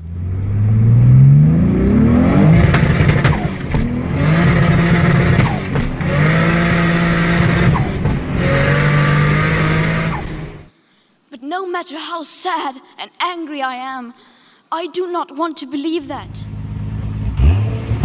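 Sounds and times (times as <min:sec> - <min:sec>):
car engine revving: 0:00.0 - 0:10.7.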